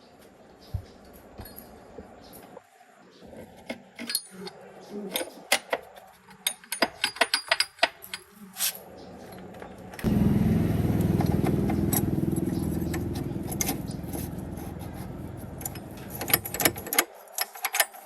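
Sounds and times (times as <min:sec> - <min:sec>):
engine running loudly: 0:10.1 - 0:16.5
metal tools clinking: 0:11.2 - 0:18.0.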